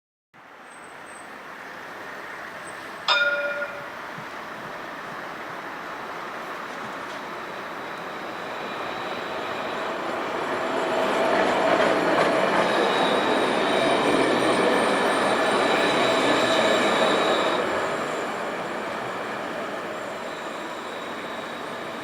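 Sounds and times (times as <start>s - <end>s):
tram on rails: 0.4s - 22.0s
high wheel squeal: 7.3s - 22.0s.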